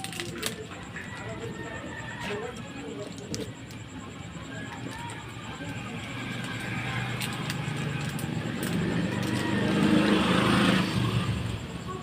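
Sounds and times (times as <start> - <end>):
vehicle passing close by: 6.2 - 11.8.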